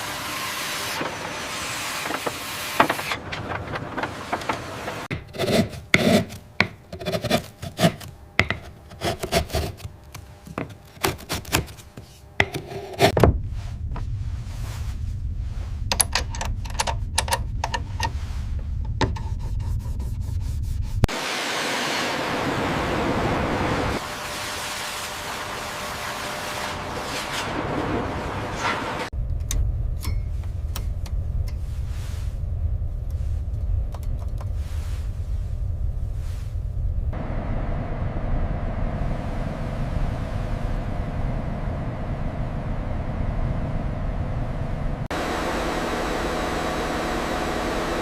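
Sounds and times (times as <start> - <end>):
rubbing and scraping: 0.8 - 15.9, 17.8 - 21.1
steady low rumble: 13.1 - 21.1, 26.8 - 45.2.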